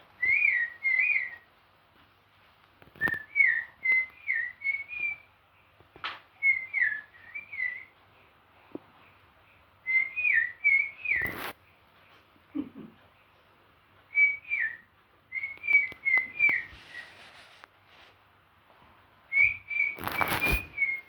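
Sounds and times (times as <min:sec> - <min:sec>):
person whistling birdsong: 0:00.2 - 0:01.4, 0:03.0 - 0:05.3, 0:06.4 - 0:07.9, 0:09.9 - 0:11.3, 0:14.1 - 0:17.2, 0:19.3 - 0:21.0
broom swishes: 0:16.7 - 0:18.2.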